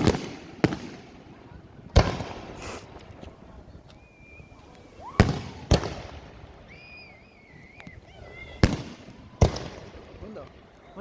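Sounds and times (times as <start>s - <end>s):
fireworks booming: 0.0s - 11.0s
high wavering whistle: 4.0s - 5.7s, 6.6s - 8.8s.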